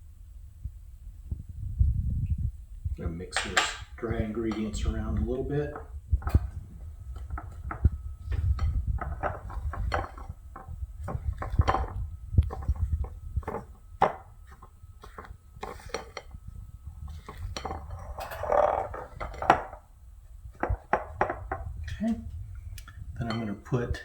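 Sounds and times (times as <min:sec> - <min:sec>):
utensil scraping mixing bowl: 0:03.3 - 0:19.9.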